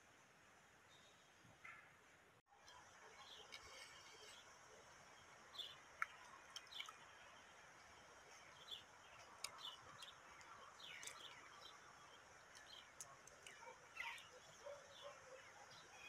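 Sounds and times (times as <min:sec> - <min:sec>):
steady low hiss: 0:00.0 - 0:16.0
small clicks: 0:09.2 - 0:11.4, 0:12.5 - 0:14.2.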